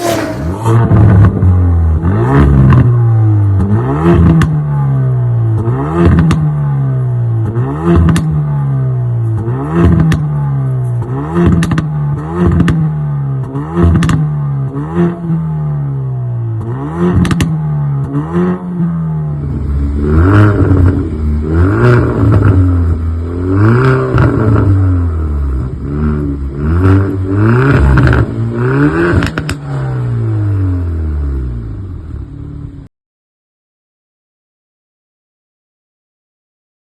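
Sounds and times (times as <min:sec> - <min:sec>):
car engine revving: 0:00.0 - 0:32.8
exhaust pops and crackles: 0:11.4 - 0:12.9, 0:16.6 - 0:18.2, 0:29.1 - 0:29.7.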